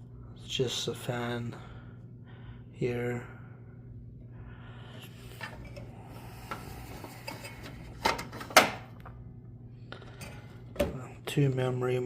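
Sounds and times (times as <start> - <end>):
steady low hum: 0.0 - 12.0
clicks and knocks of computer parts: 7.0 - 9.1.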